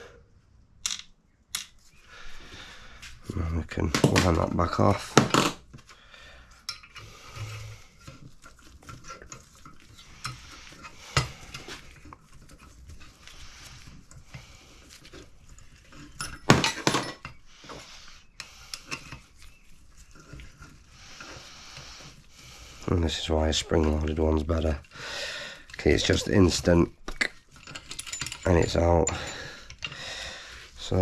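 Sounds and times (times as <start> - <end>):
metal clinks and knocks: 15.9 - 17.4, 25.8 - 30.0.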